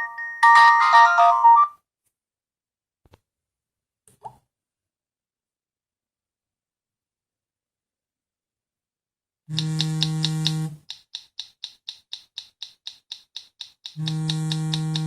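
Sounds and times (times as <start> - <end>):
phone alarm buzz with clicks: 9.5 - 12.0, 13.2 - 15.0
quick electronic ticks: 9.5 - 15.0.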